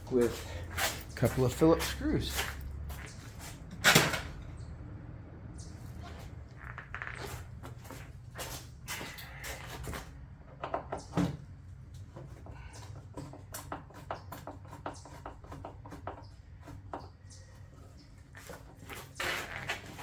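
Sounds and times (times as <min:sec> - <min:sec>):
hand tools clicking and knocking: 0:12.0 - 0:17.6.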